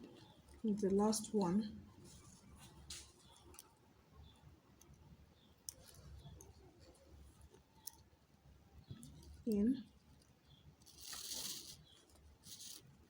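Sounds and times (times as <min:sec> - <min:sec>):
cord rustling: 0:10.8 - 0:13.0.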